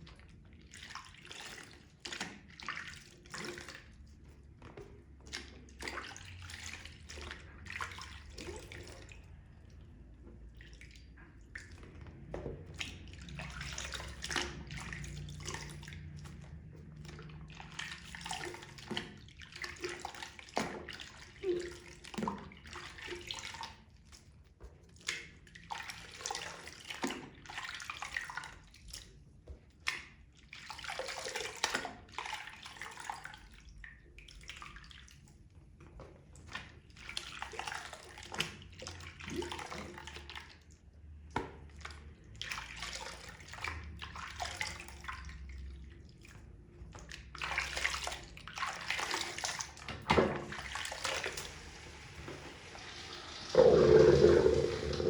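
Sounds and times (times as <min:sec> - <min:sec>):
wet sponges squelching: 0:00.0 - 0:55.0
water dripping: 0:52.2 - 0:55.0.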